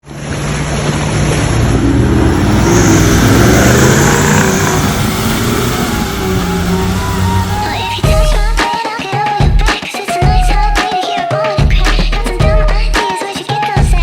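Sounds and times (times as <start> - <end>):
vehicle engine revving: 0.6 - 8.6.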